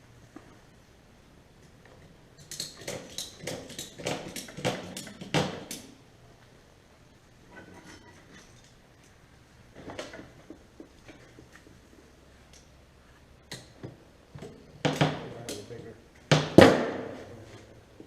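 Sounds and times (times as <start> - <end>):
objects clicking and rattling: 1.9 - 6.0
faint low hum: 5.8 - 18.0.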